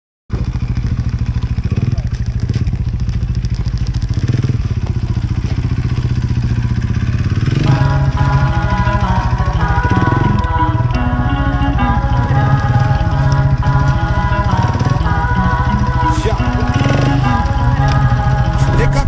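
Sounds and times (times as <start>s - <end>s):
dirt bike engine running: 0.3s - 19.0s
music with sustained notes: 6.6s - 19.0s.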